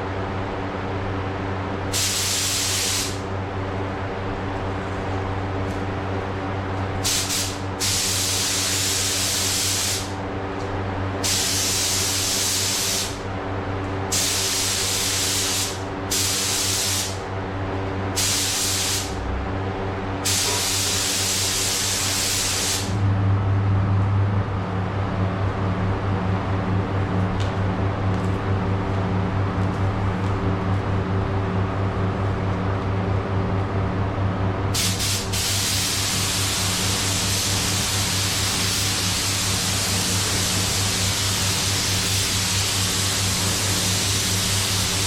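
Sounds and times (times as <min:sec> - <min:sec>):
mechanical hum: 0:00.0 - 0:45.0
paint spray gun hissing: 0:01.9 - 0:03.2, 0:07.0 - 0:10.1, 0:11.2 - 0:13.2, 0:14.1 - 0:17.2, 0:18.2 - 0:19.2, 0:20.2 - 0:23.0, 0:34.8 - 0:45.0.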